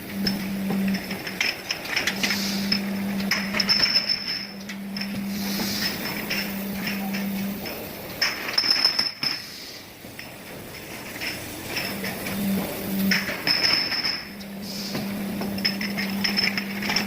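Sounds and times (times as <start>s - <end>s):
low machine hum: 0.0s - 17.0s
bottles clinking and knocking: 0.1s - 17.0s.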